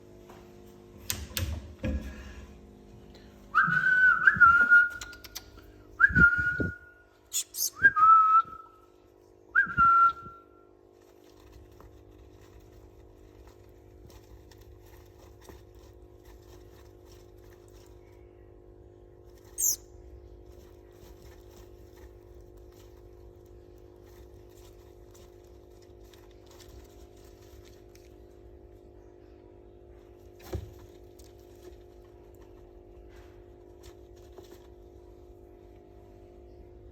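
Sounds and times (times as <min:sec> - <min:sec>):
faint steady hum: 0:00.0 - 0:36.9
whistled notes: 0:03.5 - 0:05.3, 0:06.0 - 0:08.8
baby finch chirp: 0:07.3 - 0:07.8, 0:19.6 - 0:19.8.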